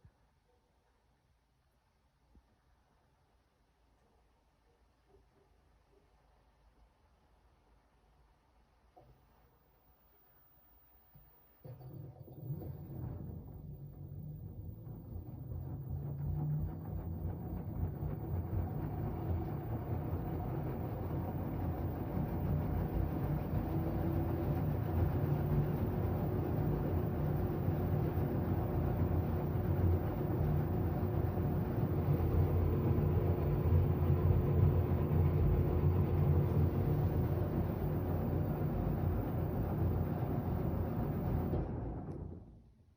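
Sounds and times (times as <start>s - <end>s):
washing machine spinning: 10.4s - 42.7s.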